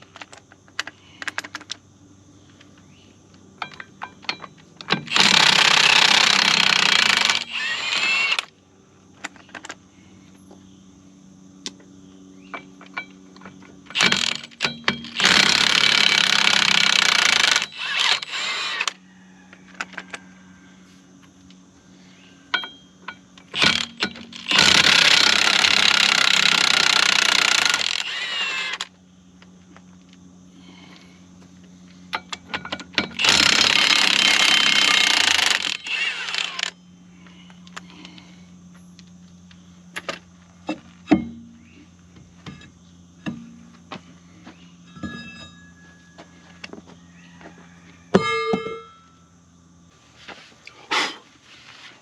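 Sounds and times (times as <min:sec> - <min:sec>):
impact wrench hammering: 0:22.5 - 0:28.8.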